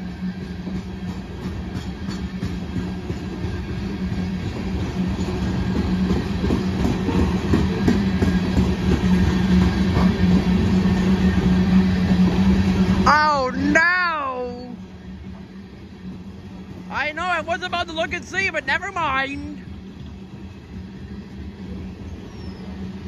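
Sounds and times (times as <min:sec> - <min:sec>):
train rumbling past: 0:00.0 - 0:23.0
wheels clicking over rails: 0:00.1 - 0:14.5.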